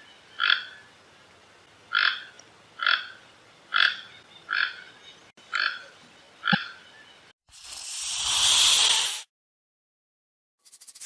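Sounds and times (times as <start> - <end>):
frog croaking: 0.4 - 0.8, 1.9 - 4.8, 5.5 - 6.8.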